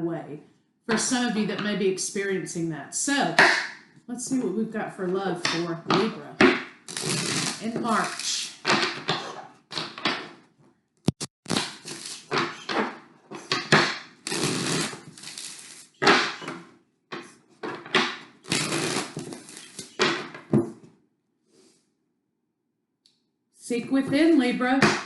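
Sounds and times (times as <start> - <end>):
cards being shuffled: 11.5 - 16.4, 17.7 - 20.4.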